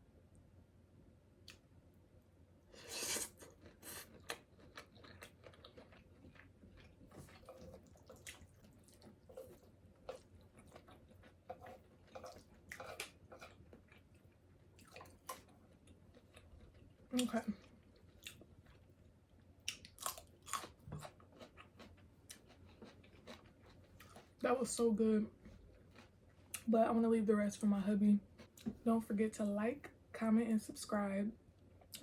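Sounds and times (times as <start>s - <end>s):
chewing and biting food: 3.0s - 19.0s, 19.6s - 24.4s, 25.4s - 26.7s.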